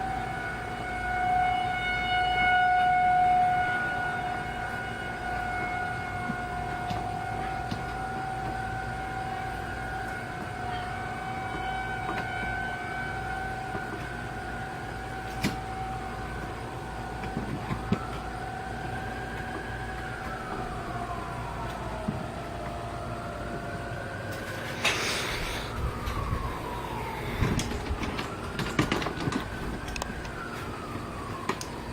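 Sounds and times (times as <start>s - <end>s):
warning siren wailing: 0.0s - 31.9s.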